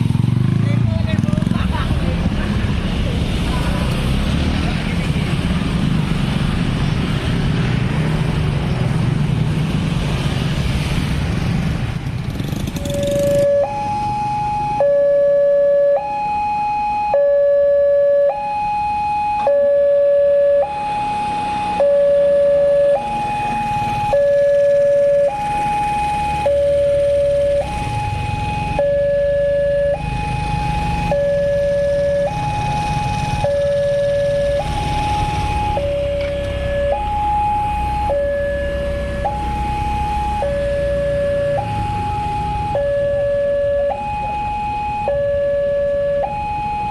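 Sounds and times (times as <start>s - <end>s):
vehicle noise: 0.0s - 46.9s
two-tone crossing siren: 12.8s - 46.9s.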